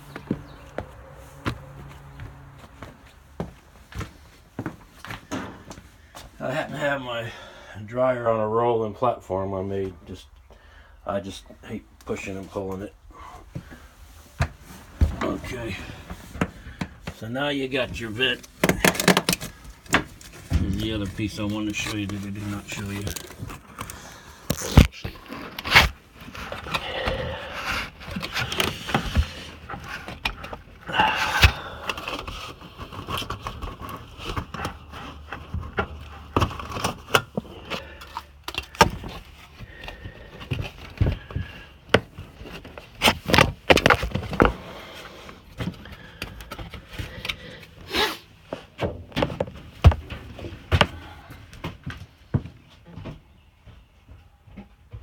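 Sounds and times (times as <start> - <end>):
metal duct scraping and rattling: 17.7 - 24.3.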